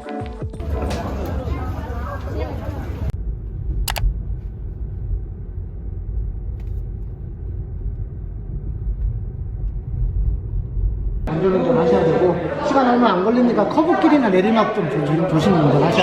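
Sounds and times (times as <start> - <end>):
vehicle rumbling while moving: 0.6 - 11.3
sharp click: 3.9 - 4.1.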